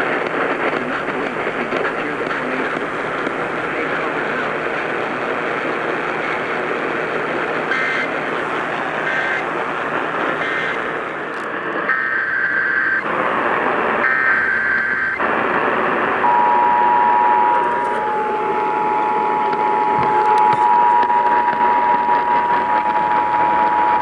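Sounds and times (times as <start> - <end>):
radio hiss: 0.0 - 24.0
harsh digital data bursts: 0.6 - 11.2, 11.9 - 24.0.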